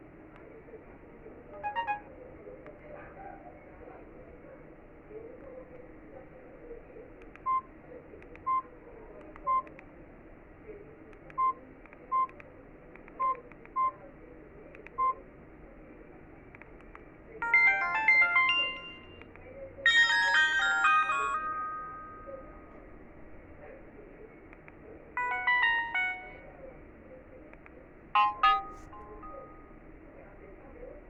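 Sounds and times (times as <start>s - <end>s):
short keypad beeps: 1.6s - 2.1s, 13.2s - 14.0s, 28.2s - 29.7s
melodic notification tones: 1.7s - 2.0s, 17.4s - 19.2s, 19.9s - 22.6s, 25.2s - 26.4s, 28.2s - 29.7s.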